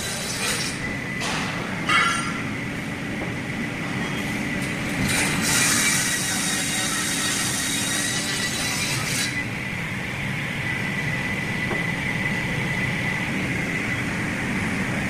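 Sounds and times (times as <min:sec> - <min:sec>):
cutting saw running: 0:05.0 - 0:09.5.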